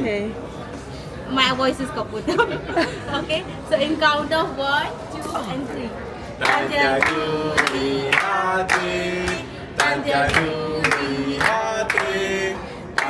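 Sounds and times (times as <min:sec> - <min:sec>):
hand claps: 0:06.4 - 0:12.2
group singing together: 0:06.4 - 0:13.0.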